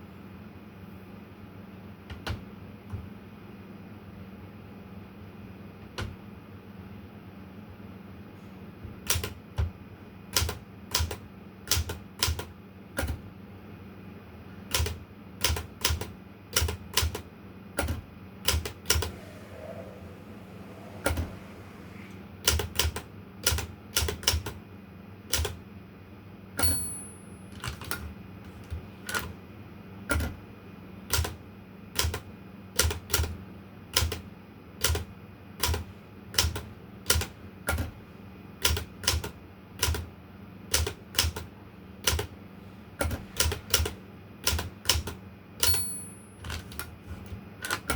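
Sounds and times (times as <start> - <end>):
typewriter bell ring: 26.6 - 27.6, 45.6 - 46.6.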